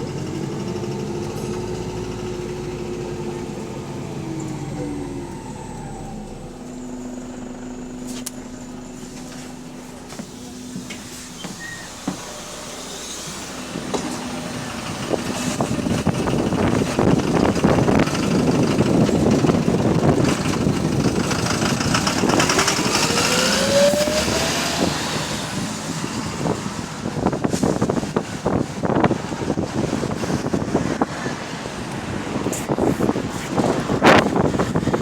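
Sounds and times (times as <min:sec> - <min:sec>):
rising whine: 0:00.0 - 0:27.1
bus engine working hard: 0:00.0 - 0:35.0
engine knocking: 0:13.4 - 0:24.0.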